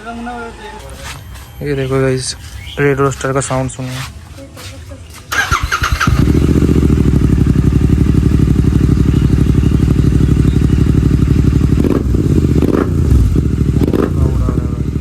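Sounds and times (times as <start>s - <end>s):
motorcycle engine idling: 5.0s - 15.0s
engine revving: 5.2s - 15.0s.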